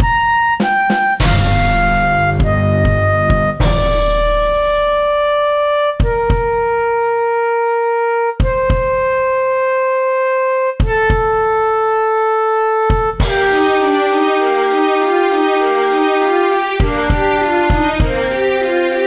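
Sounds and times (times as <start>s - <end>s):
flute playing slow melody: 0.0s - 19.0s
low chord: 1.2s - 4.7s, 13.2s - 19.0s
sharp percussion hit: 1.2s - 5.1s, 13.2s - 19.0s.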